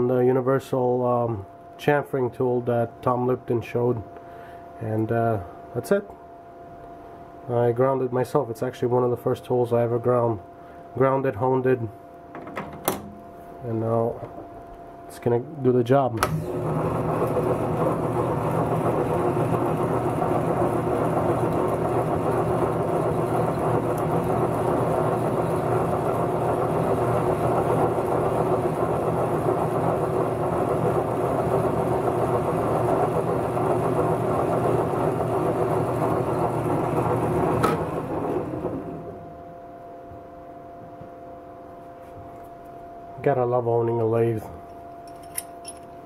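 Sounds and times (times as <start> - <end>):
metal lathe running: 16.4 - 38.8.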